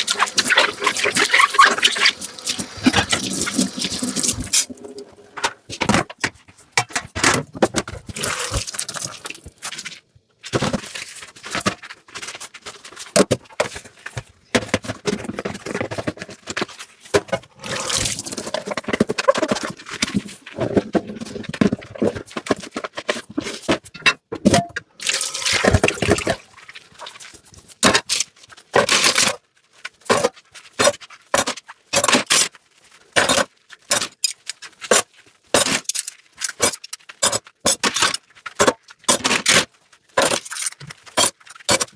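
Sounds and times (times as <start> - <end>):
water splashing and scrubbing: 0.0 - 5.8, 8.0 - 10.0, 17.6 - 21.4, 25.0 - 27.5.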